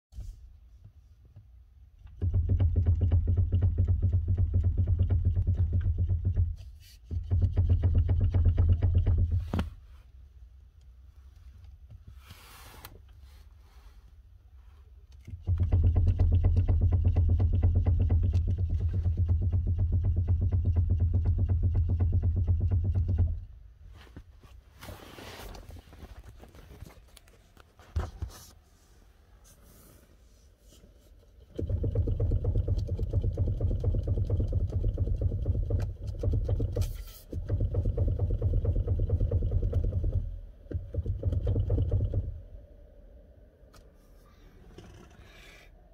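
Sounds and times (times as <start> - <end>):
rapid knocking from steering column: 2.2 - 9.5, 15.4 - 23.4, 31.5 - 42.4.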